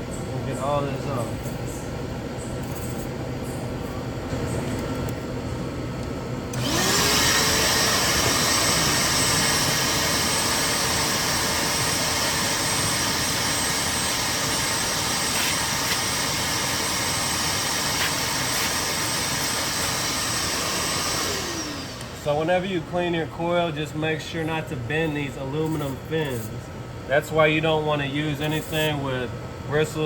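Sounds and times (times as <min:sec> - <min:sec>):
shop vac motor whining: 0:05.8 - 0:26.7.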